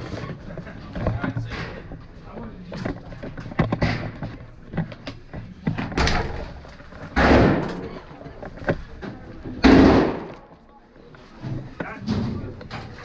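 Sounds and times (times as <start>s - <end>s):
light knocks and clatter: 0.0s - 10.7s
heavy doors slamming: 7.2s - 8.2s, 9.6s - 10.6s.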